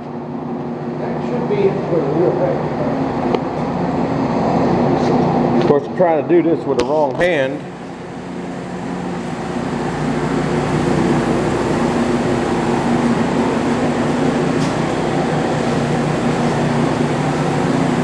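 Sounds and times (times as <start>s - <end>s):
metal lathe humming: 7.6s - 18.0s.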